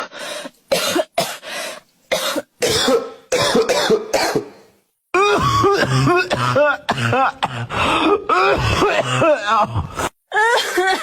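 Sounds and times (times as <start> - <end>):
person fake coughing: 2.1 - 4.6, 5.2 - 11.0.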